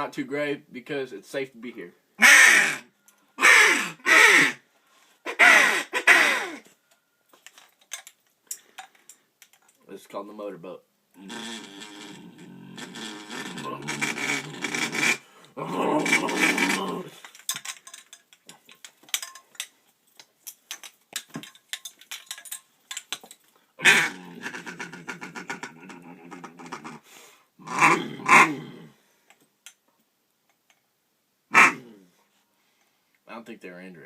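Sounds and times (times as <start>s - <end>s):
duck call buzzy blasts: 2.2s - 4.6s, 5.2s - 6.7s, 11.2s - 12.2s, 12.8s - 15.3s, 16.0s - 17.0s, 23.8s - 25.6s, 31.5s - 31.8s.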